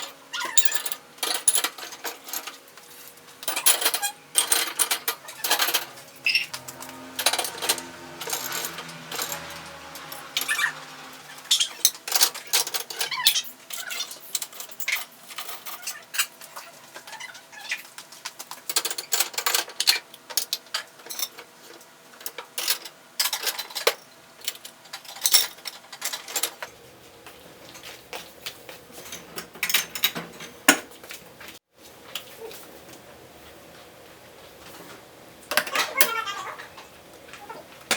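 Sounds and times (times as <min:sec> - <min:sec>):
dishes and cutlery clinking: 0:03.3 - 0:10.8.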